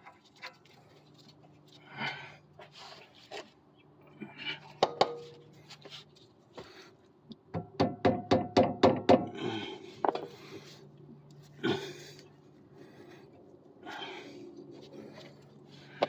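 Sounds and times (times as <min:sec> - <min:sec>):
sharp knocks: 0:07.5 - 0:09.3
tools scraping and clunking: 0:10.0 - 0:10.7.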